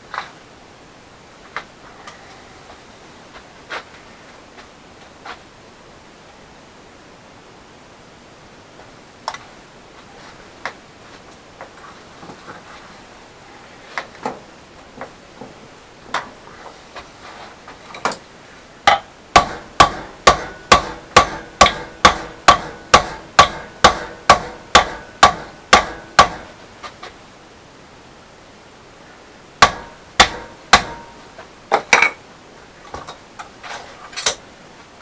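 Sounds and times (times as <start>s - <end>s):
hammer striking steel rod: 18.9s - 26.6s, 29.6s - 31.2s.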